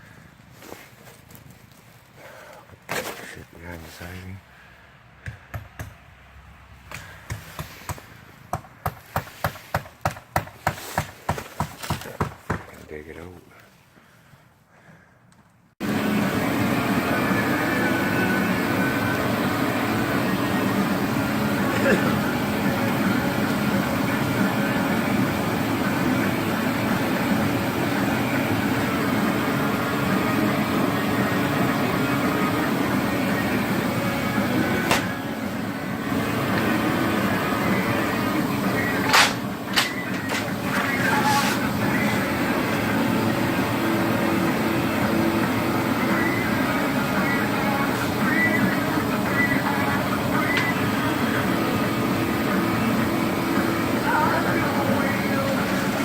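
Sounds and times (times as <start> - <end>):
steady mechanical drone: 15.8 - 56.0.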